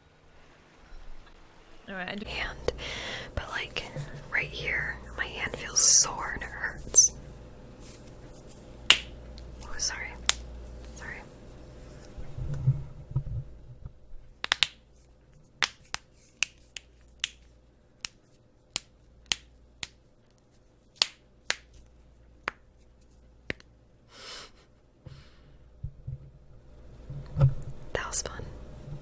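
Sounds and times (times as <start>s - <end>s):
soft hiss: 0.0s - 29.0s.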